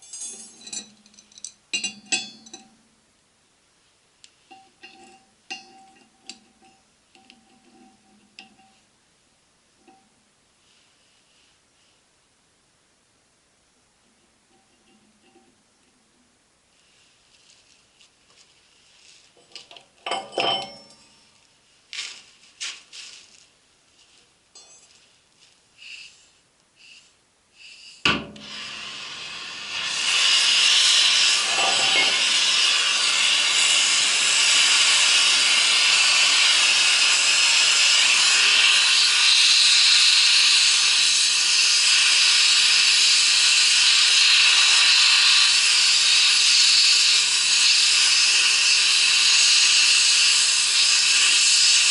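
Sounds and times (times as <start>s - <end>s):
metal tools clinking: 0.0s - 2.8s, 19.4s - 21.3s, 24.6s - 25.1s
gas welding torch hissing: 25.8s - 26.2s, 26.8s - 51.9s.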